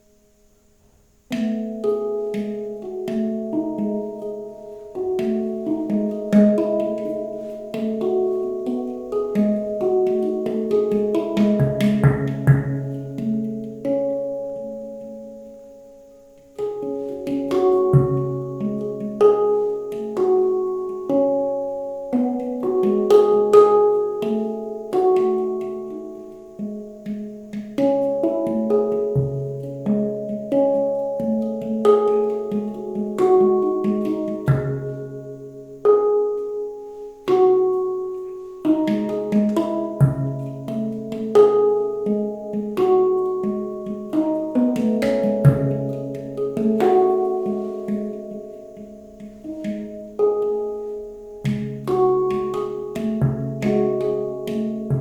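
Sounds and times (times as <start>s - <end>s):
handpan melody: 1.2s - 55.0s
deep handpan bass note: 1.3s - 15.3s, 16.5s - 23.6s, 37.3s - 55.0s.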